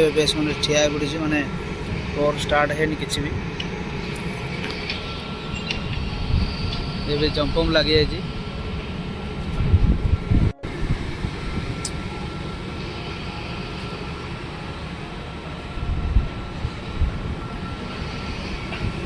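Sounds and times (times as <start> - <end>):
low rumble: 9.0 - 13.0.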